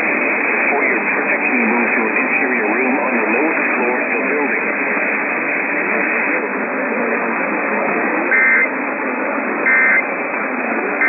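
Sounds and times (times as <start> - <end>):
radio signal hiss: 0.0 - 6.6
faint speech: 0.6 - 5.0
warbling digital data tones: 8.3 - 8.7, 9.6 - 10.1.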